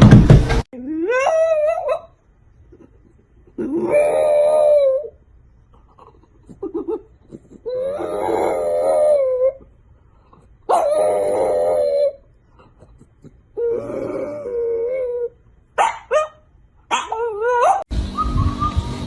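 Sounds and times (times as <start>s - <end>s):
dog howling: 3.6s - 5.1s, 7.7s - 9.6s, 10.7s - 12.2s.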